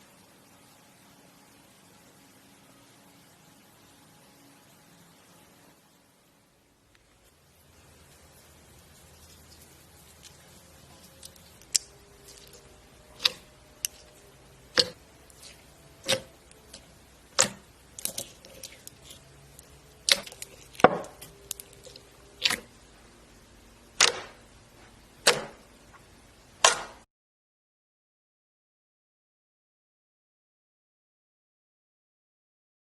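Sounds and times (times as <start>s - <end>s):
slime popping and clicking: 13.2s - 16.8s, 20.0s - 22.7s.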